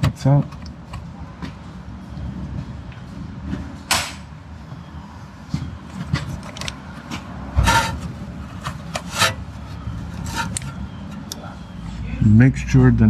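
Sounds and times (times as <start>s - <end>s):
metal tools and parts clunking: 7.6s - 9.4s, 10.2s - 11.3s.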